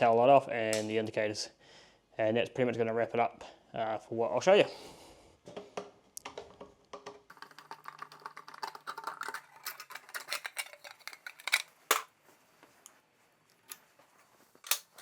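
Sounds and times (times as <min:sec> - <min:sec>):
metallic clicks from hand tools: 0:14.6 - 0:15.0.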